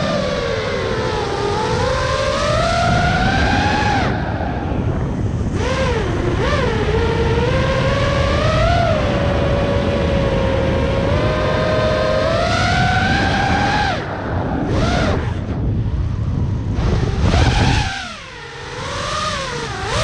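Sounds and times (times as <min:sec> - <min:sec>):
quadcopter motors whining: 0:00.0 - 0:20.0.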